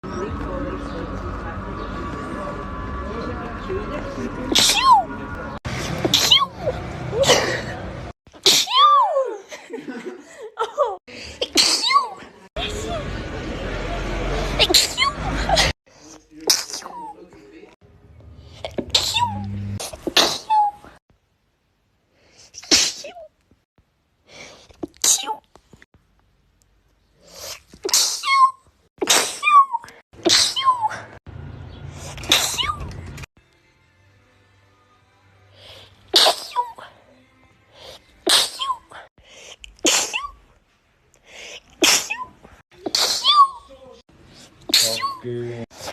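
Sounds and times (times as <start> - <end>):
person sneezing: 8.4 - 8.8, 22.4 - 23.3, 36.1 - 36.9, 38.2 - 39.0, 39.8 - 40.3, 41.8 - 43.4.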